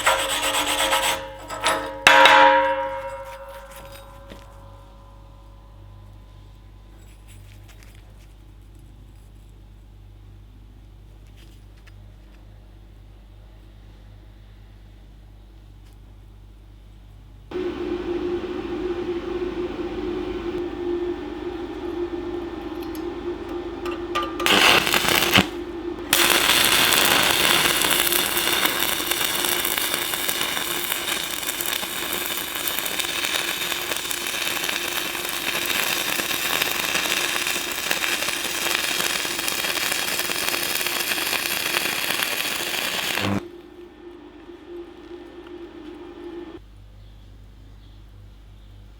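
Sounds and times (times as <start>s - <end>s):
welding arc crackling and sizzling: 0.0s - 5.3s, 22.6s - 46.6s
steady low hum: 0.0s - 10.6s, 16.6s - 48.4s.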